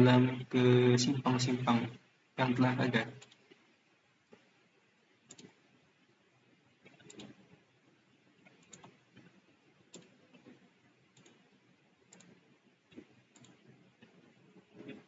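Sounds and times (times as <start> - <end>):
computer mouse clicks: 3.2 - 3.6, 5.2 - 5.6, 6.8 - 7.4, 8.4 - 15.0.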